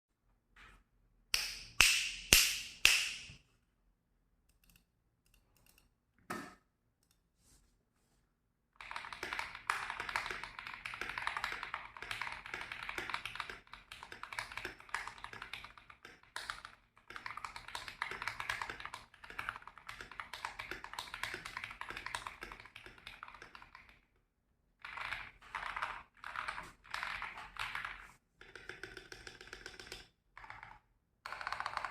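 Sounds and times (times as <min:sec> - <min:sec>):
typing on mechanical keyboard: 0:08.8 - 0:24.1, 0:24.8 - 0:31.9.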